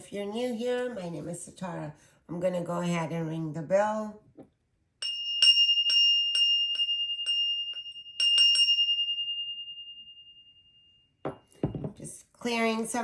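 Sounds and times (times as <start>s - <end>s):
small bell ringing: 5.0s - 11.9s.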